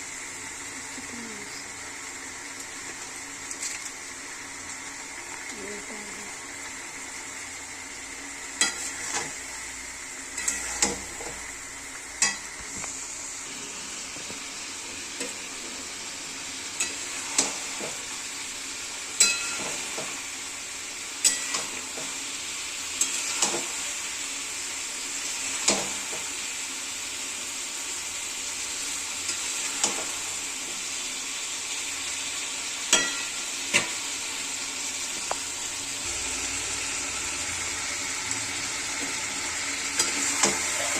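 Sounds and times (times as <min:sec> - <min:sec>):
food sizzling in a pan: 0:00.0 - 0:40.9
spoon clinking against pan: 0:19.2 - 0:19.6, 0:32.9 - 0:33.4.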